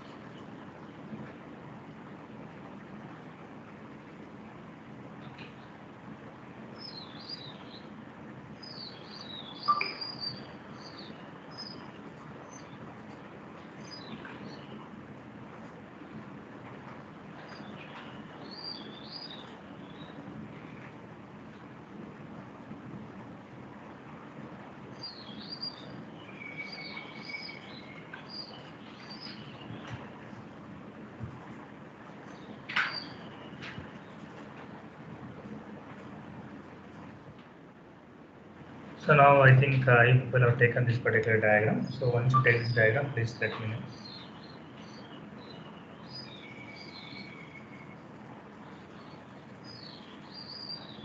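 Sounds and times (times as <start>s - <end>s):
background hiss: 0.0s - 51.0s
faint room noise: 0.0s - 51.0s
small birds chirping: 6.5s - 16.1s, 17.2s - 21.7s, 24.9s - 30.7s, 32.1s - 34.8s, 39.0s - 51.0s.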